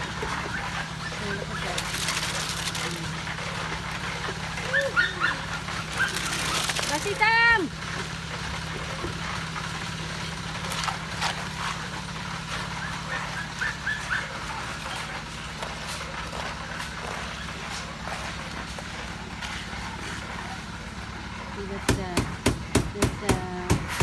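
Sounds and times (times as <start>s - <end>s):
engine droning: 0.0s - 24.0s
sharp knocks and taps: 21.9s - 24.0s.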